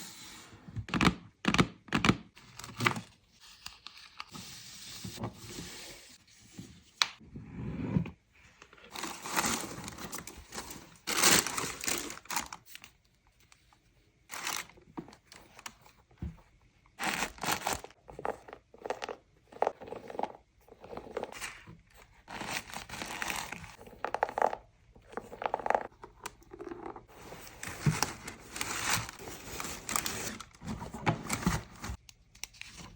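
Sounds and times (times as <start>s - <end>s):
paper crinkling and tearing: 8.9s - 12.9s, 14.3s - 14.8s, 17.0s - 18.0s, 22.3s - 23.8s, 27.4s - 32.9s.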